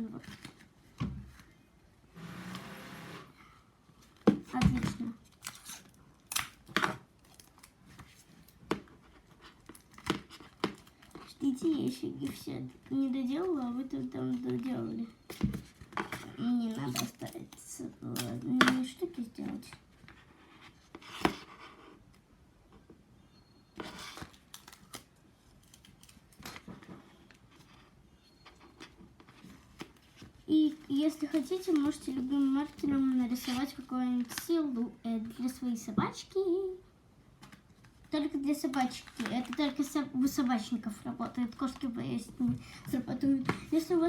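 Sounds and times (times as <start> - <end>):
paper rustling: 23.8 - 35.5, 37.4 - 44.0.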